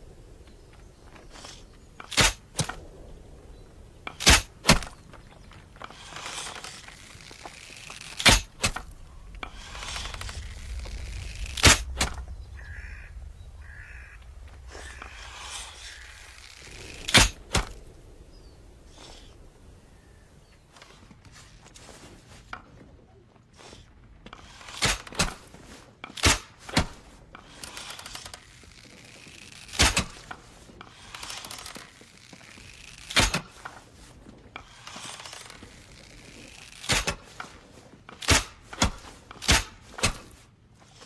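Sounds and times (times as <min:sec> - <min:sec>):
soft rustling: 0:00.0 - 0:24.8, 0:26.9 - 0:38.2
arrows striking: 0:01.4 - 0:02.9, 0:04.1 - 0:19.6, 0:34.7 - 0:40.4.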